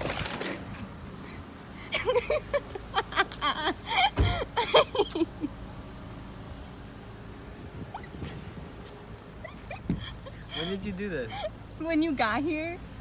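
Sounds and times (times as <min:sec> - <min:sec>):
voices talking and laughing: 0:08.6 - 0:12.7.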